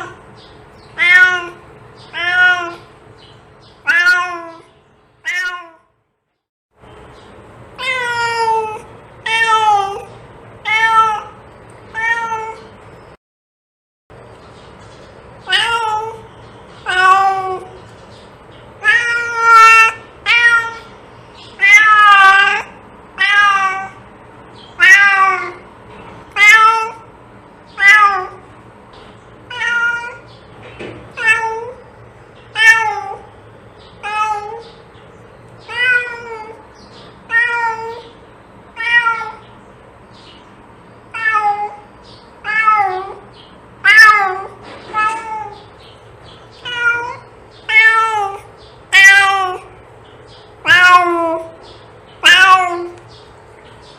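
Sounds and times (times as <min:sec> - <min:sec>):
cat meowing: 0:01.0 - 0:02.9, 0:03.8 - 0:05.9, 0:07.8 - 0:12.7, 0:15.4 - 0:17.8, 0:18.8 - 0:20.9, 0:21.6 - 0:24.0, 0:24.7 - 0:25.7, 0:26.3 - 0:27.1, 0:27.7 - 0:28.5, 0:29.5 - 0:30.3, 0:31.1 - 0:31.8, 0:32.5 - 0:33.3, 0:34.0 - 0:34.8, 0:35.6 - 0:36.6, 0:37.3 - 0:39.5, 0:41.1 - 0:45.7, 0:46.6 - 0:49.8, 0:50.6 - 0:51.6, 0:52.2 - 0:53.0.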